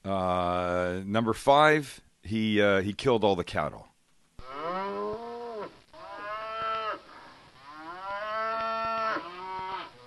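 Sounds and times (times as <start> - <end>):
cattle mooing: 4.4 - 10.0.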